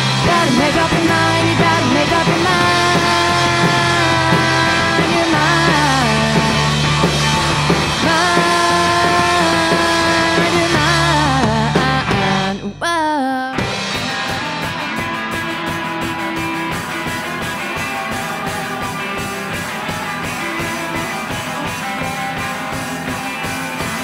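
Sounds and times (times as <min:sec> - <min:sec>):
rock band playing instrumental: 0:00.0 - 0:12.9, 0:13.6 - 0:24.0
guitar strumming: 0:00.0 - 0:24.0.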